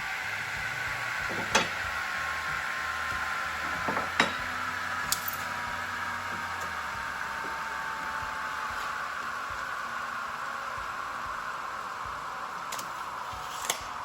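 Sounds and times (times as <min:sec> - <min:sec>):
faint whine falling in pitch: 0:00.0 - 0:14.0
boards knocking: 0:03.7 - 0:04.4.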